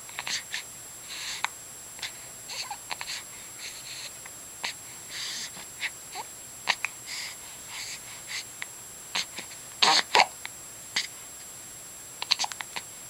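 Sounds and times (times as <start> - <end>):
baby hiccuping: 9.2 - 10.4, 12.2 - 12.7.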